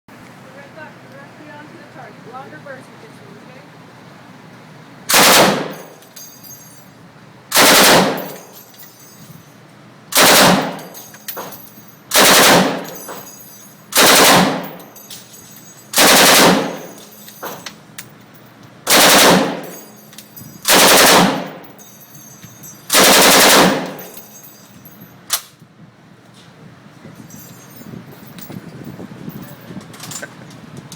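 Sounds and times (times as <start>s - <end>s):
machine gun bursts: 5.1s - 6.0s, 7.5s - 8.6s, 10.2s - 11.0s, 12.1s - 13.2s, 14.0s - 15.0s, 15.9s - 17.0s, 18.9s - 19.9s, 20.7s - 21.6s, 22.9s - 24.2s.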